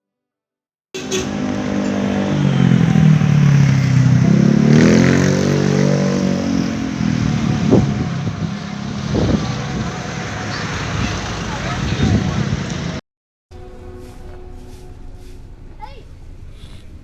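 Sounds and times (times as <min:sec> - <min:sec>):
vehicle engine revving: 0:01.0 - 0:13.0.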